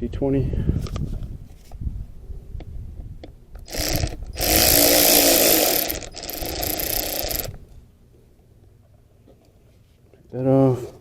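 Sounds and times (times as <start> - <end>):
cordless drill spinning out screw: 3.7 - 7.6.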